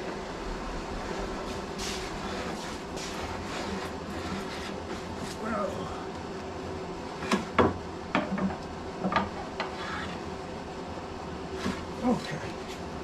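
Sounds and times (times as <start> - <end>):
hand plane scraping wood: 1.8 - 5.4.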